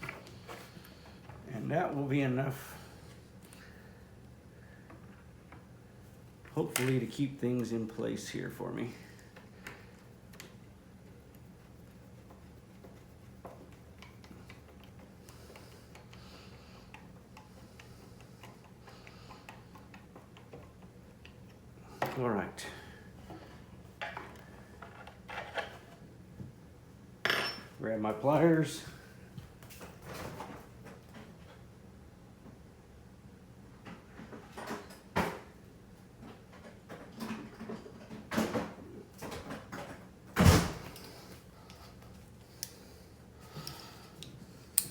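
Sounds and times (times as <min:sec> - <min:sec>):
steady low hum: 0:00.0 - 0:34.2.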